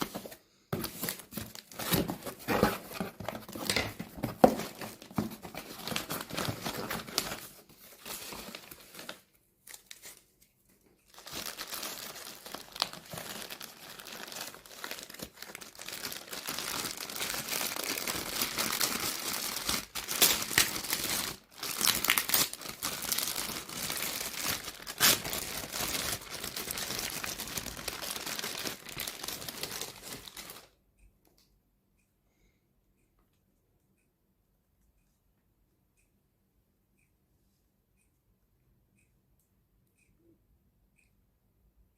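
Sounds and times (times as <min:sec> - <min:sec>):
packaging crinkling and tearing: 0:00.0 - 0:10.3, 0:11.1 - 0:30.7.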